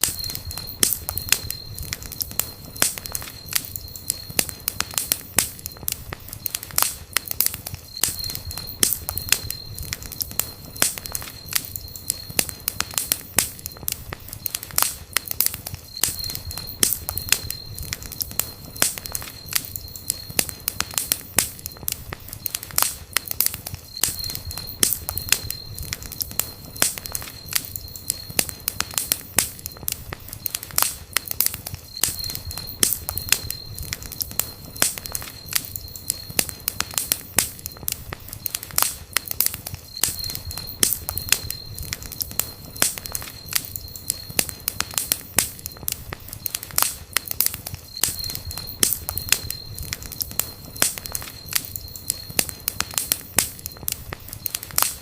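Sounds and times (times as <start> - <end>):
thin high whistle: 0.0 - 6.9, 7.5 - 14.8, 15.5 - 22.7, 23.5 - 45.8, 46.4 - 53.8
campfire crackling: 0.0 - 55.0.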